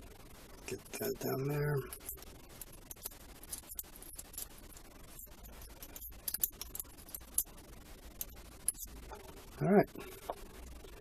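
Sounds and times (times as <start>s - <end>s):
small metal parts clicking: 1.9s - 7.5s.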